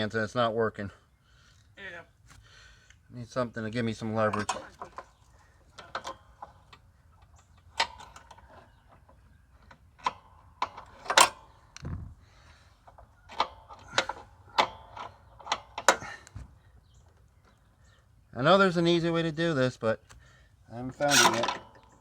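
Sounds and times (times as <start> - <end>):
screwdriver clinking on metal: 5.8 - 6.6, 10.0 - 11.5, 13.3 - 16.2, 21.0 - 22.0.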